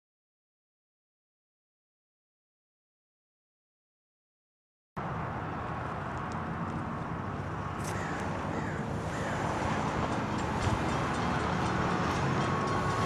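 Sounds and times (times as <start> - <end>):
train rumbling: 5.0 - 13.0.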